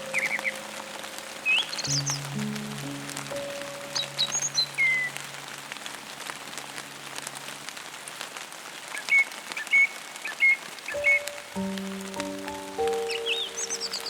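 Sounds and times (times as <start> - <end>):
steady rain patter: 0.0 - 14.0
birds singing: 1.4 - 2.8, 3.4 - 5.2, 9.0 - 11.6, 12.3 - 14.0
soft held music chord: 1.9 - 5.9, 11.0 - 14.0.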